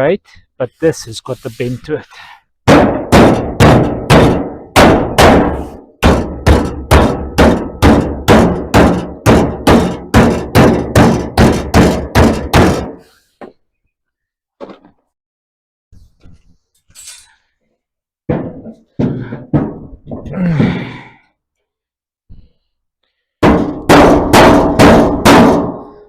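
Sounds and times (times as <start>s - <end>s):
hammer beating on steel plate: 2.7s - 13.0s, 23.4s - 26.0s.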